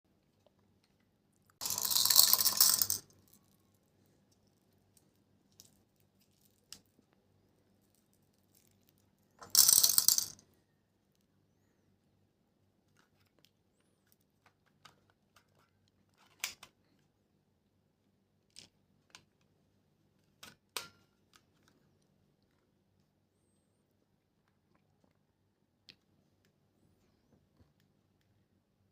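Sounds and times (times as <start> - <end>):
plastic toy parts clicking: 1.6 - 3.1, 9.4 - 10.4
plastic pieces rattling: 1.6 - 3.3, 8.4 - 10.4.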